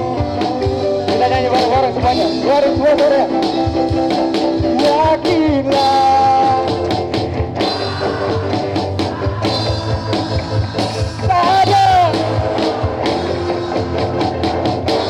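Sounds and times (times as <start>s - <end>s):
person singing: 0.0s - 3.4s, 4.6s - 6.9s, 7.6s - 14.8s
drums: 0.0s - 15.0s
live rock band playing: 0.0s - 15.0s.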